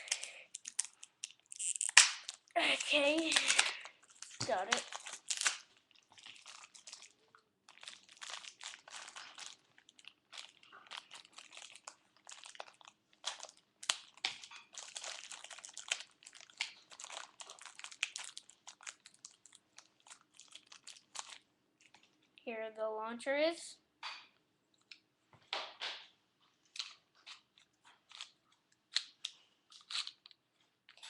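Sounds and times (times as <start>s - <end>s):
plastic packaging crinkling: 0.0s - 22.3s.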